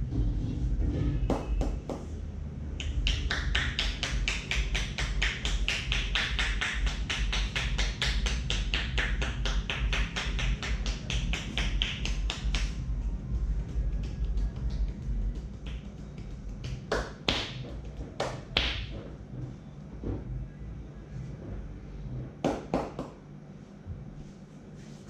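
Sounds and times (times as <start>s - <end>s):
hands tapping on a head: 1.3s - 2.1s, 2.8s - 12.9s, 13.6s - 19.1s, 22.4s - 23.2s.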